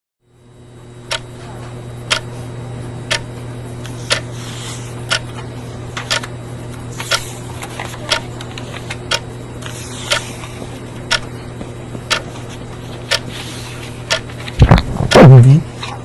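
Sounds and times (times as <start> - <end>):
clock ticking: 2.1 - 2.3.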